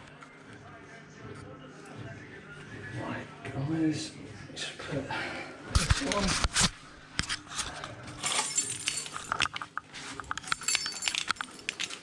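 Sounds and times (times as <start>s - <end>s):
high metallic jingle: 8.2s - 9.4s, 10.4s - 12.0s
small metal objects clinking: 8.2s - 9.7s, 10.3s - 12.0s.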